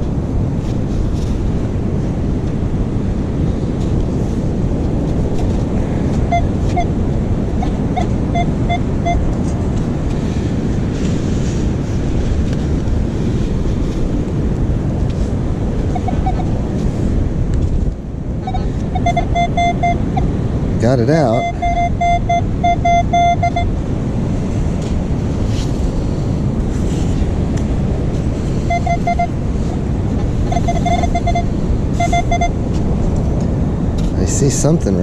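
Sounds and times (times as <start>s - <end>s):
beach surf: 0.0s - 35.0s
wind buffeting microphone: 0.0s - 35.0s
metal detector beeps: 6.3s - 6.9s, 7.6s - 9.3s, 15.9s - 16.5s, 18.4s - 20.3s, 21.1s - 23.7s, 28.6s - 29.8s, 30.4s - 32.6s.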